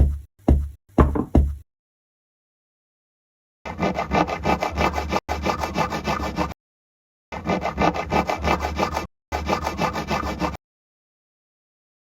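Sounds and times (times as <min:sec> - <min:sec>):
hand saw cutting wood: 0:03.7 - 0:06.6, 0:07.3 - 0:10.6.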